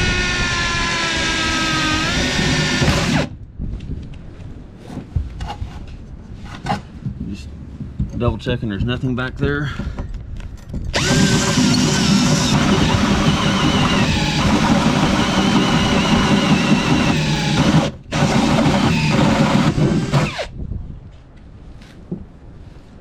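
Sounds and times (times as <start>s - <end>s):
drill with hole saw grinding: 0.0s - 3.3s, 11.0s - 20.5s.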